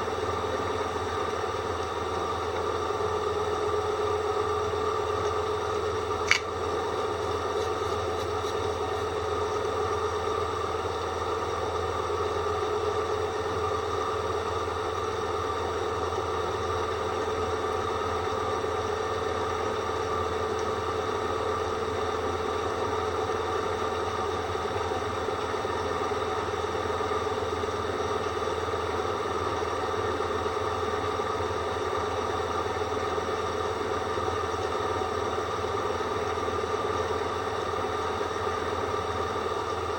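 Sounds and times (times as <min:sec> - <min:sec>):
sharp click: 0:06.2 - 0:06.5.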